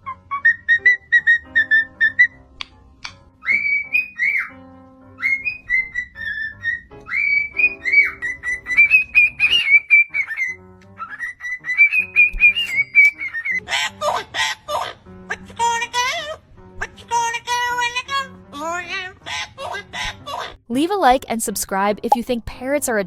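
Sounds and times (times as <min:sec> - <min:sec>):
parrot whistling a tune: 0:00.0 - 0:02.4, 0:03.4 - 0:13.6
soft instrumental music: 0:00.0 - 0:21.1
parrot raspy calls: 0:03.4 - 0:04.6, 0:05.2 - 0:15.4, 0:18.9 - 0:20.6.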